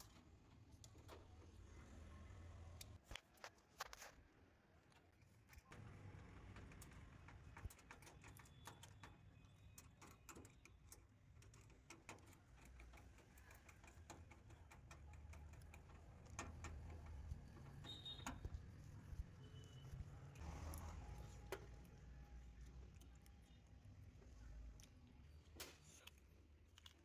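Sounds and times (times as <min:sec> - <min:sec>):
small clicks and taps of tools: 0:06.4 - 0:18.9.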